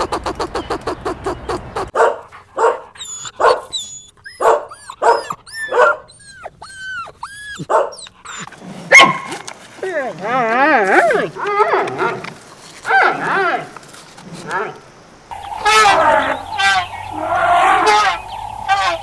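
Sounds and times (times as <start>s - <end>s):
dog barking: 1.9s - 3.8s, 4.4s - 6.1s, 7.6s - 8.0s, 8.9s - 9.4s
dog whining and yelping: 2.6s - 12.2s.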